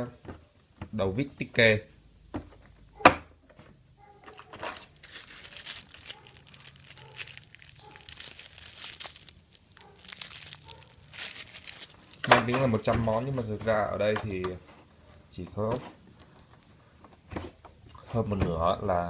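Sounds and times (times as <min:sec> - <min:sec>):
plastic crinkling and rustling: 0:04.2 - 0:14.6.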